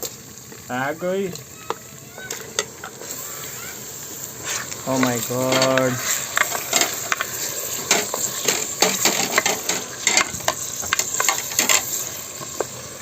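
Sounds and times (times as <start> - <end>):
steady high hiss: 0.0 - 13.0
wood fire crackling clicks: 4.2 - 13.0.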